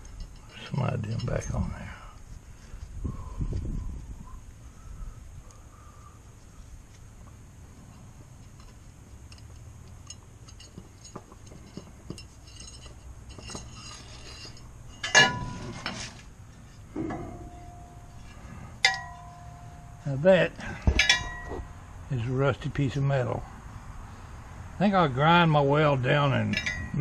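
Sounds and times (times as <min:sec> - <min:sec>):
metal parts clinking: 0:08.4 - 0:16.2, 0:17.0 - 0:20.1, 0:20.7 - 0:21.8
metal on metal clanks: 0:09.3 - 0:16.2, 0:16.9 - 0:21.8, 0:26.4 - 0:27.0.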